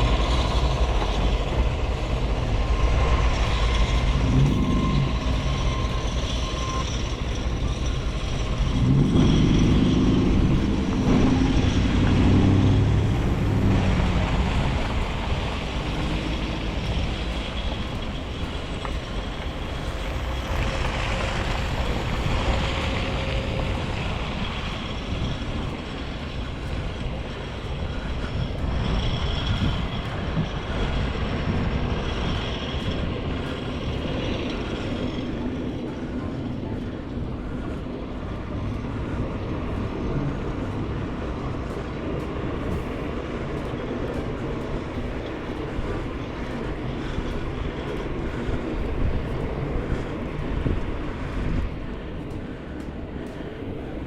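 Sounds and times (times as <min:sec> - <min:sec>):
low outdoor rumble: 0:00.0 - 0:54.0
vehicle engine passing by: 0:07.4 - 0:25.3.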